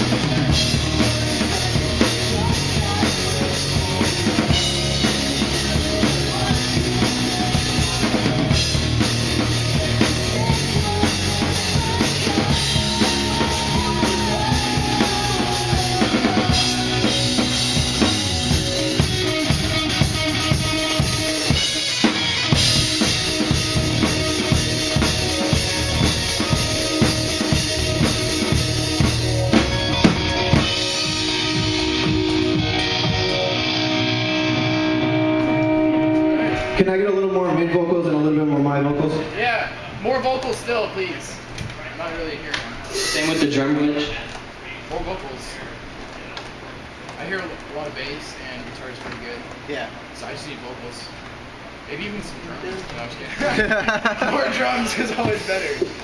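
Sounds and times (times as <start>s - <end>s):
rock band playing live: 0.0s - 39.8s, 42.8s - 44.0s.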